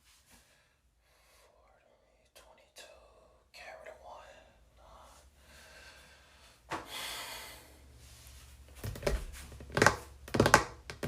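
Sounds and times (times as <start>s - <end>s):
person breathing out: 5.0s - 7.9s.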